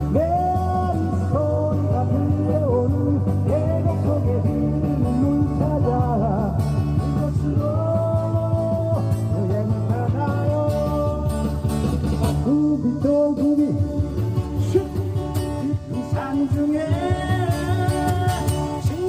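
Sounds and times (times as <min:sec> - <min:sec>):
acoustic guitar music: 0:00.0 - 0:19.0.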